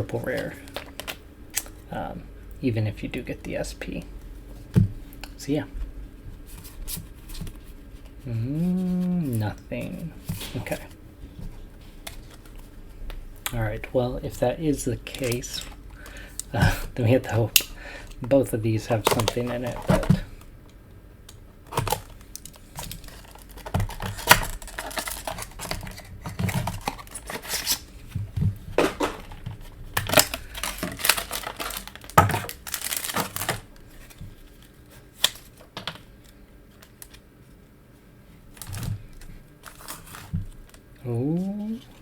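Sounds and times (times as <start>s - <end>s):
cards being handled: 6.4s - 20.4s, 21.7s - 37.6s
packaging torn and crinkled: 19.0s - 20.2s, 21.7s - 27.9s, 28.8s - 35.6s, 38.5s - 40.8s.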